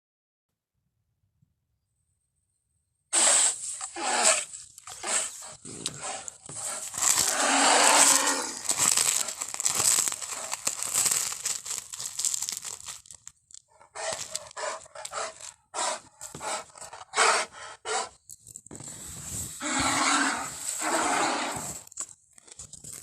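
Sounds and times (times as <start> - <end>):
short hissing bursts: 3.1 - 5.5
creature hissing call: 3.2 - 5.4, 6.0 - 8.6, 19.6 - 21.8.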